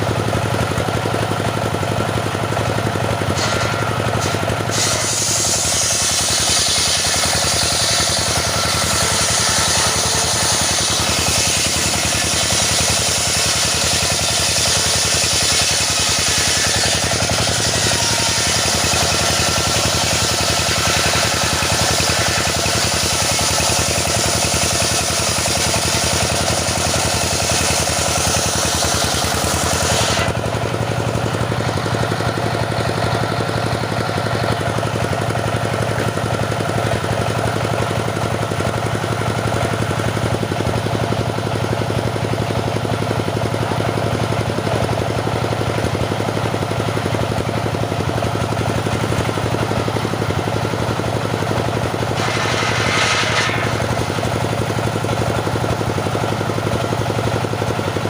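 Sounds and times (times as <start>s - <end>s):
petrol saw engine sawing wood: 0.0s - 58.0s
loud hiss: 4.7s - 13.0s, 52.2s - 54.2s.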